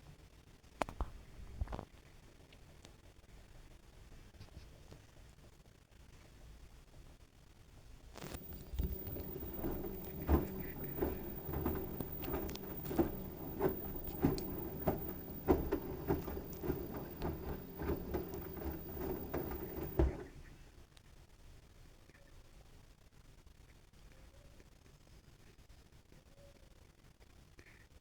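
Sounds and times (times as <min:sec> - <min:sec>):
washing machine motor humming: 0:08.2 - 0:20.4
towels thudding in drum: 0:08.4 - 0:20.4.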